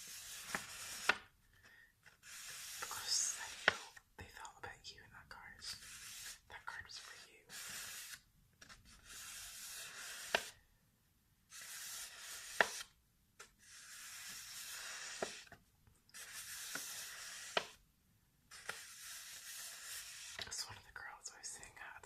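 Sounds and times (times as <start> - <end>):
paper being rubbed: 0.0 - 1.2, 2.1 - 3.8, 5.7 - 6.4, 7.1 - 10.5, 11.5 - 15.5, 16.1 - 17.8, 18.5 - 20.6.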